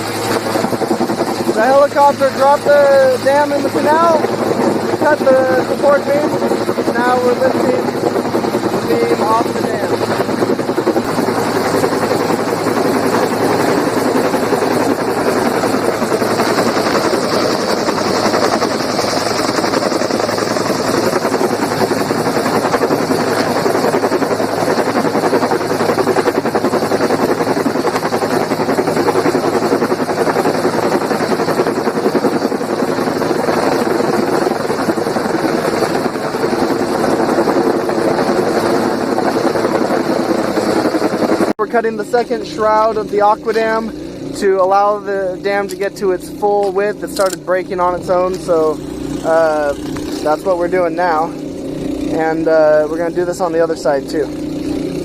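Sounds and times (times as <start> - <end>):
helicopter rotor beating: 0.0 - 55.0.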